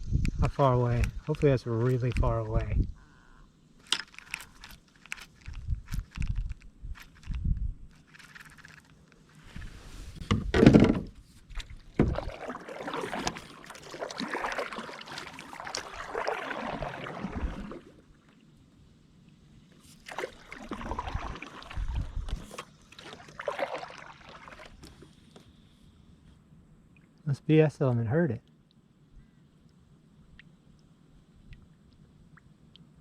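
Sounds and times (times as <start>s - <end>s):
paddle splashing in water: 9.4s - 18.4s, 19.7s - 25.3s.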